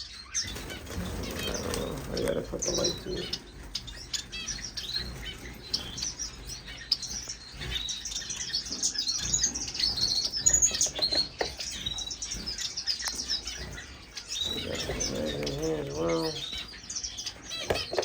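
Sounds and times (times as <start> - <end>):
finches chirping: 0.0 - 18.0.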